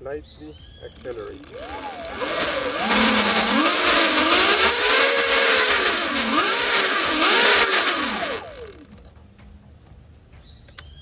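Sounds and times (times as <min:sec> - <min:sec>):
small engine revving: 0:00.9 - 0:09.2.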